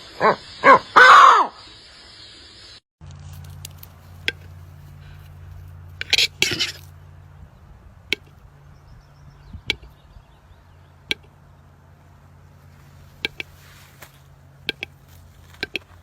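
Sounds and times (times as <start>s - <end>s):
low steady hum: 3.0s - 16.0s
sharp taps: 8.1s - 8.4s, 9.6s - 10.0s, 11.0s - 11.4s, 13.2s - 16.0s.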